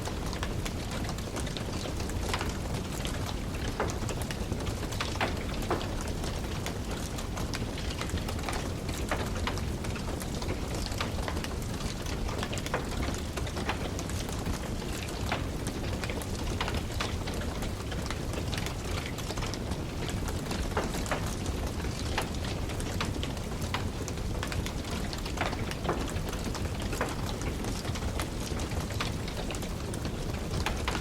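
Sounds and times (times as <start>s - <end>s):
low rumble of flames: 0.0s - 31.0s
wood fire crackling: 0.0s - 31.0s.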